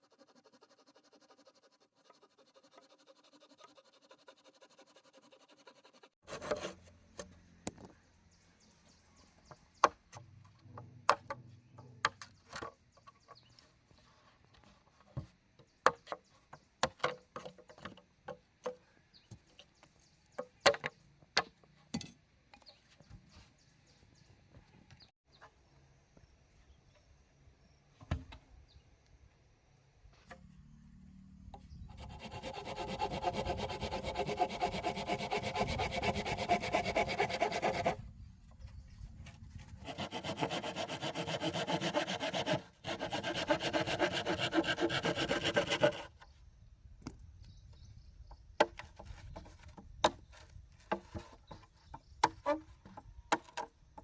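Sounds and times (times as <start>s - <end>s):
bamboo being knocked and chopped: 28.0s - 28.4s, 48.6s - 54.0s.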